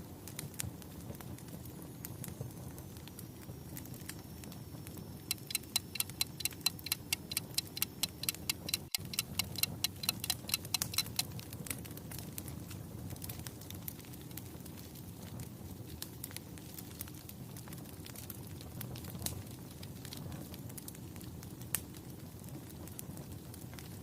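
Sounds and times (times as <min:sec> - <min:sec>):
fire crackling: 0:00.0 - 0:24.0
low steady rumble: 0:05.1 - 0:11.2.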